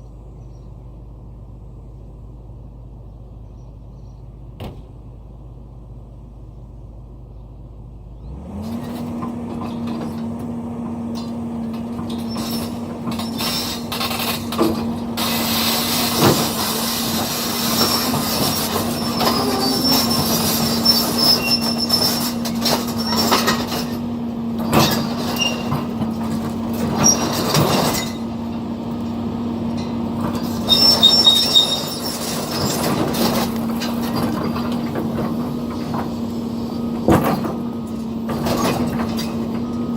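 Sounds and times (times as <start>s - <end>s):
excavator diesel engine revving: 8.0s - 39.9s
steel tracks clanking and squealing: 8.5s - 39.9s.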